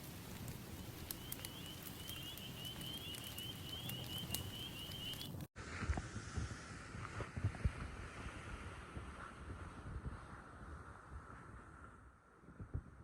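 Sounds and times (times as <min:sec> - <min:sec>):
campfire crackling and popping: 0:00.0 - 0:05.5
thin high whistle: 0:01.1 - 0:05.4.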